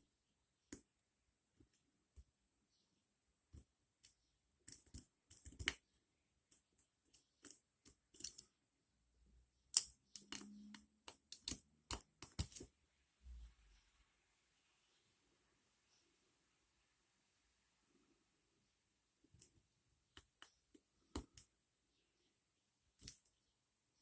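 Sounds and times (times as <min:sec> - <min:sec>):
lock pick clicking and scraping: 0:07.3 - 0:08.5, 0:09.7 - 0:12.7.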